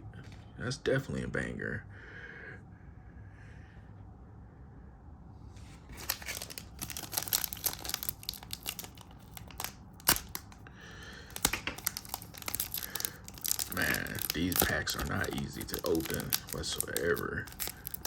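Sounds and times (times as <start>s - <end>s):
foil wrapper tearing and crinkling: 5.9s - 18.0s.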